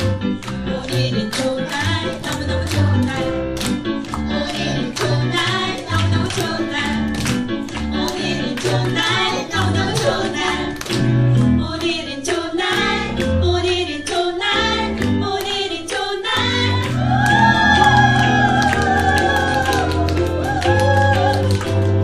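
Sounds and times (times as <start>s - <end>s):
group of voices singing: 4.2s - 7.2s, 7.8s - 21.5s.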